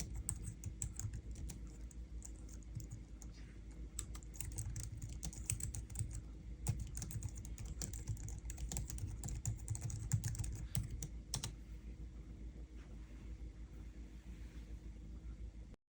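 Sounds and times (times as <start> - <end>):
keyboard typing: 0.0 - 3.3, 3.9 - 11.6.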